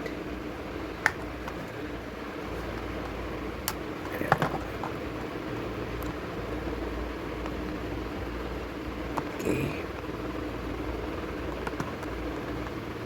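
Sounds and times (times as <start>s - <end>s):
low background hum: 0.0s - 13.0s.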